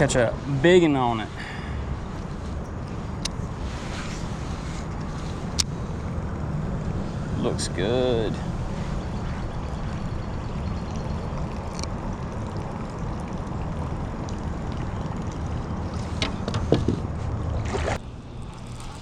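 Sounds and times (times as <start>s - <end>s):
faint water noise: 0.0s - 19.0s
small knocks: 16.2s - 17.1s.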